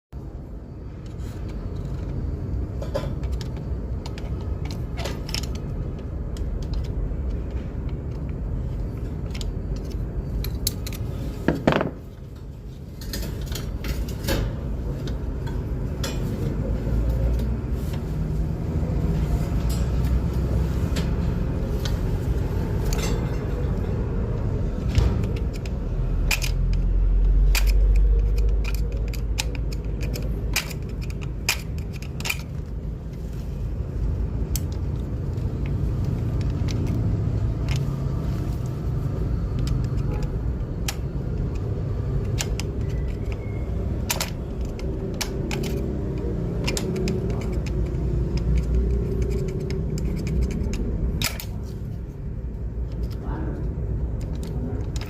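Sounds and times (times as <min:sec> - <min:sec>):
metal clinks and tool clicks: 0:01.0 - 0:14.4, 0:19.5 - 0:21.1, 0:21.8 - 0:33.3, 0:34.3 - 0:51.7.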